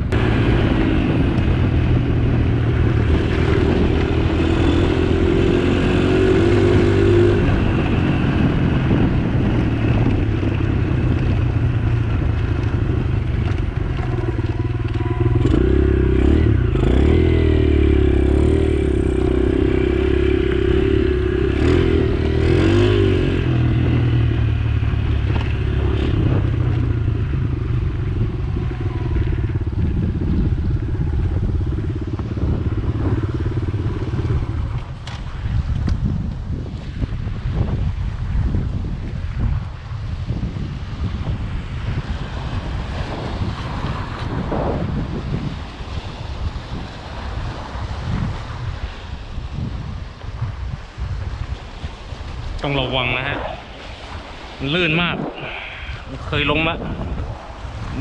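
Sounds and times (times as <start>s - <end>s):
engine running: 0.0s - 35.4s.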